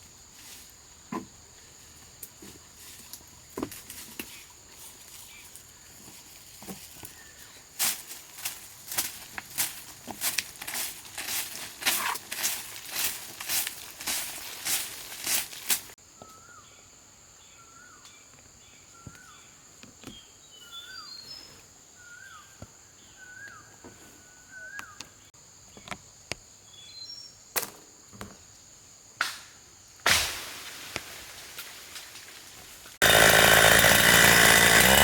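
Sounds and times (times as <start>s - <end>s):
sharp rustling strikes: 7.8s - 16.0s
bird calling: 20.1s - 25.3s.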